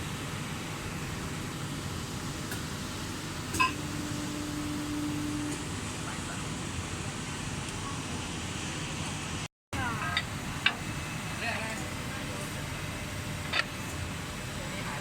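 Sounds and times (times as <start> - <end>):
bending machine humming: 0.1 - 15.0
steady low tone: 3.6 - 6.7.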